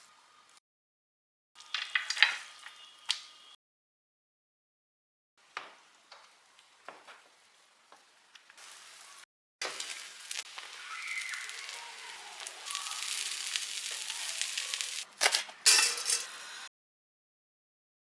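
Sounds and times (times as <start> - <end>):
food sizzling in a frying pan: 1.6 - 3.4, 5.4 - 16.7.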